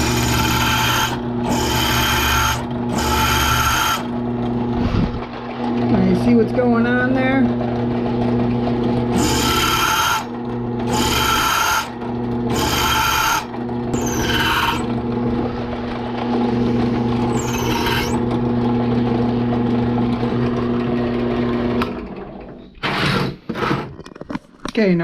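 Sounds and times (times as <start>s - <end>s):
drill bit grinding metal: 0.0s - 4.6s, 9.0s - 15.4s, 16.9s - 18.5s
drill press motor humming: 0.0s - 6.8s, 7.4s - 23.1s.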